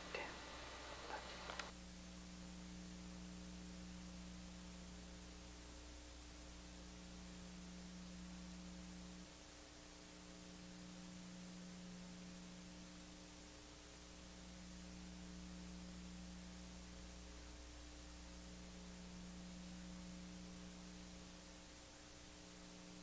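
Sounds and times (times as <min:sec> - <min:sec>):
faint hiss: 0:00.0 - 0:23.0
low electrical hum: 0:00.0 - 0:23.0.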